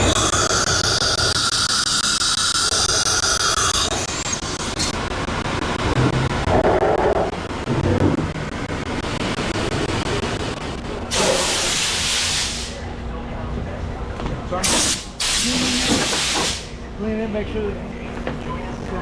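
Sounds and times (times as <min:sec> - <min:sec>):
rough machine noise: 0:00.0 - 0:12.8.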